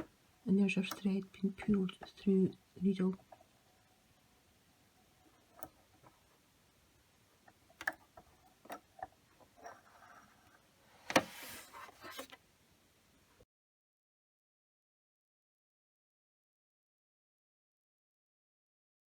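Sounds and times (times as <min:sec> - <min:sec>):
rustling: 0:09.4 - 0:12.4.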